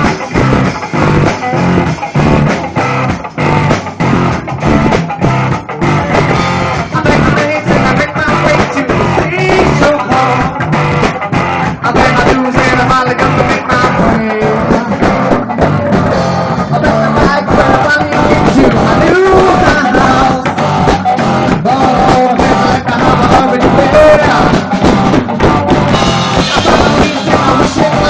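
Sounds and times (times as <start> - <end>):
sung vocals: 0.0 - 2.6, 5.3 - 28.0
live rock band playing: 0.0 - 28.0.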